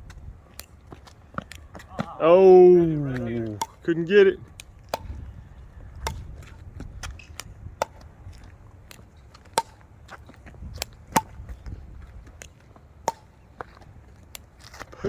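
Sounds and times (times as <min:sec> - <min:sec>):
paddles striking a plastic ball: 0:03.1 - 0:03.9, 0:04.5 - 0:14.8.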